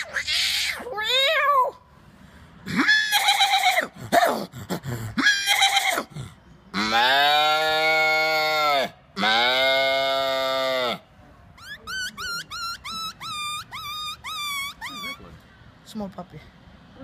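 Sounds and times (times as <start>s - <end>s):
imitated puppy whimpering squeaks: 11.6s - 15.3s.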